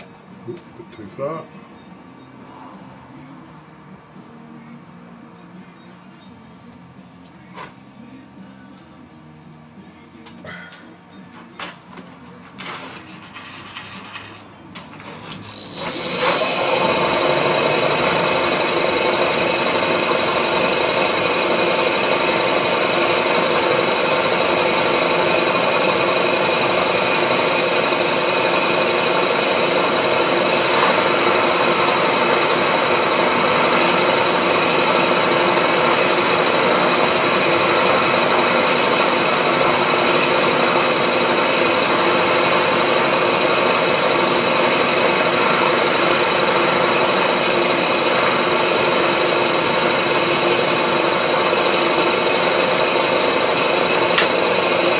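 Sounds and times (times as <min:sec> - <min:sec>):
machine tool motor whining: 0:12.6 - 0:54.9.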